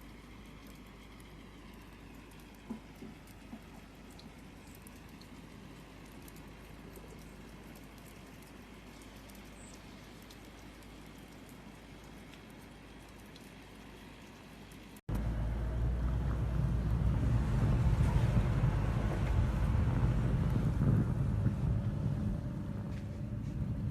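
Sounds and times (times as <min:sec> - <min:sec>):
small ticks: 0:00.0 - 0:15.0
blizzard wind buffeting microphone: 0:15.2 - 0:23.9.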